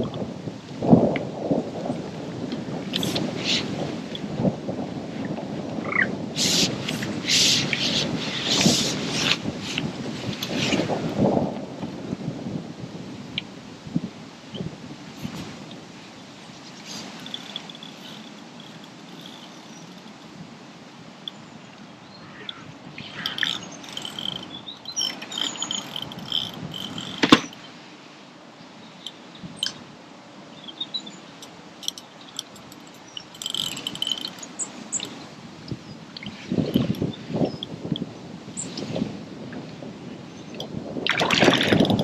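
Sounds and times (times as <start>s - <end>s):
high-pitched chirping calls: 16.6s - 20.3s, 22.4s - 27.7s, 31.8s - 35.2s
sharp click: 23.3s - 27.6s.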